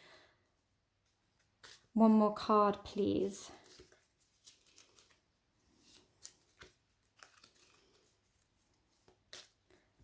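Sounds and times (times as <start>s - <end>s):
cards rustling and clicking: 1.0s - 1.9s, 3.6s - 10.0s.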